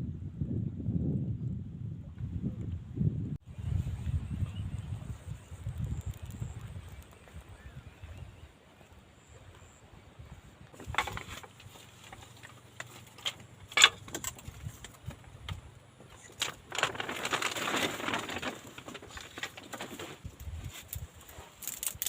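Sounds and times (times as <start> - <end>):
dense rustling and crackling: 10.7 - 22.0
scattered clicks and knocks: 10.8 - 15.6.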